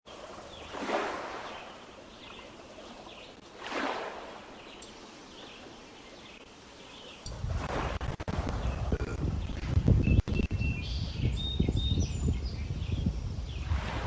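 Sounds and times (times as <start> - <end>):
lake waves lapping on stones: 0.1 - 4.8, 13.7 - 14.0.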